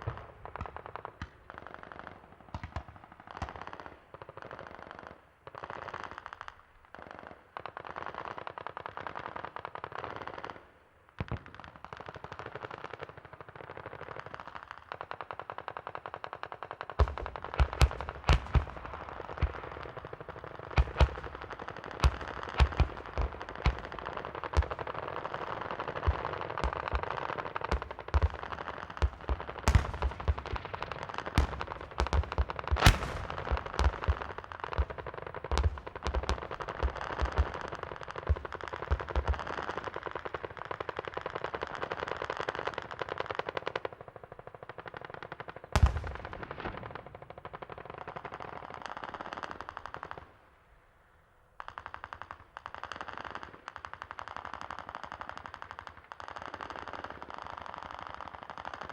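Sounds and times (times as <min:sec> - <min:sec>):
heavy blast: 0:32.8 - 0:33.8
single gunshots cracking: 0:32.8 - 0:34.1.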